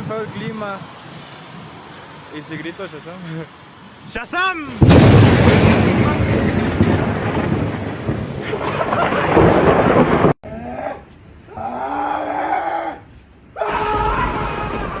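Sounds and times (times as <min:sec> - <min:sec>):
rain hissing: 0:00.0 - 0:10.4
thunder rumbling: 0:04.7 - 0:10.4, 0:13.7 - 0:15.0.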